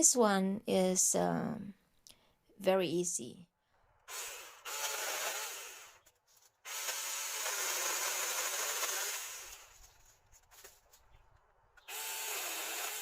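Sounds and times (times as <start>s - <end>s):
chainsaw cutting a branch: 4.1s - 6.0s, 6.6s - 9.8s, 11.9s - 13.0s.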